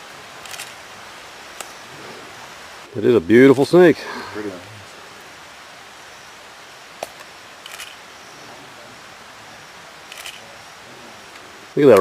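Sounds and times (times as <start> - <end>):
steady outdoor hiss: 0.0 - 12.0
camera shutter clicks: 0.4 - 0.8, 7.0 - 8.0, 10.1 - 10.4.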